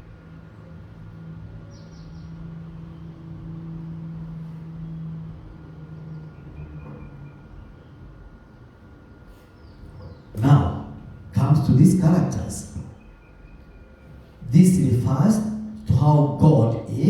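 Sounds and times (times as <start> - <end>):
low steady hum: 10.4 - 13.2, 13.9 - 17.0.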